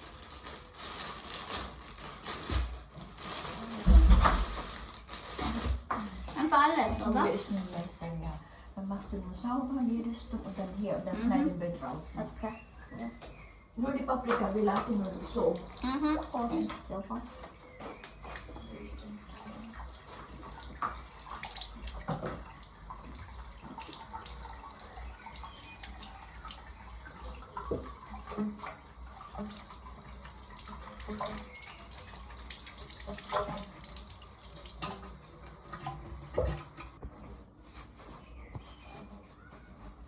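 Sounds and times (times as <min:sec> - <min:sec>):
tap running into a sink: 0:19.5 - 0:24.8.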